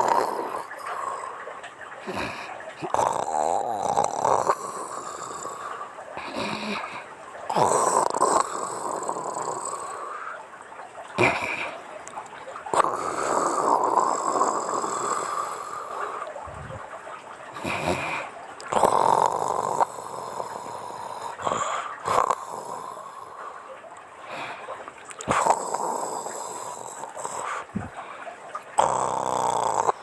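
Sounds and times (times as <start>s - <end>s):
woman snoring: 28.8s - 30.0s.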